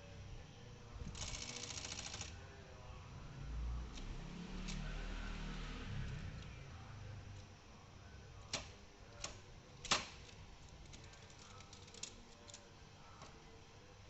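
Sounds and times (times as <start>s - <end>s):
typewriter mechanism clicks: 8.5s - 12.6s.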